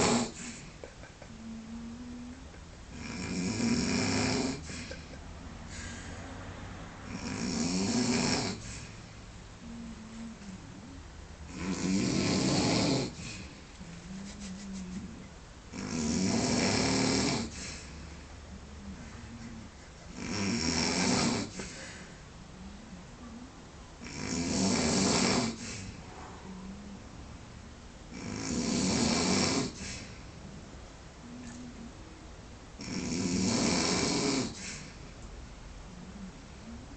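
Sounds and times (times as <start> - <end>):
man snoring: 0.0 - 0.6, 1.4 - 6.0, 7.0 - 8.9, 11.5 - 13.6, 15.7 - 18.0, 19.6 - 22.0, 24.0 - 26.0, 28.1 - 30.1, 32.8 - 34.6
quiet breathing: 0.0 - 7.2, 8.3 - 11.5, 12.4 - 15.4, 16.4 - 20.3, 20.9 - 24.1, 25.3 - 27.8, 29.4 - 32.4, 34.3 - 36.9.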